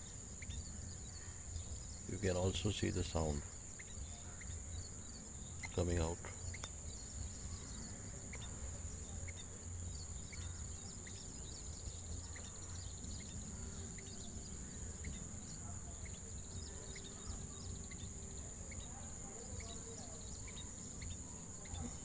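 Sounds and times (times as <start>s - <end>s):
birds giving short high chirps: 0.0s - 22.0s
high-pitched insect drone: 0.0s - 22.0s.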